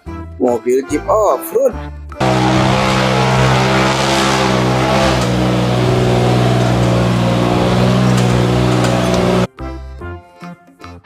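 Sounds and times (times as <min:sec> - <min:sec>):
car engine running: 0:02.2 - 0:09.5.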